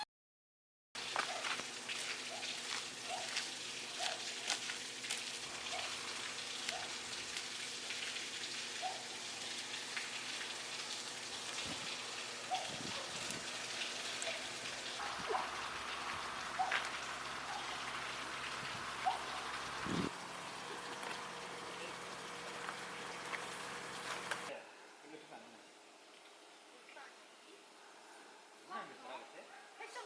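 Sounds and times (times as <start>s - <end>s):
raindrops pattering on surface: 1.0s - 24.5s
steady rain: 1.0s - 24.5s.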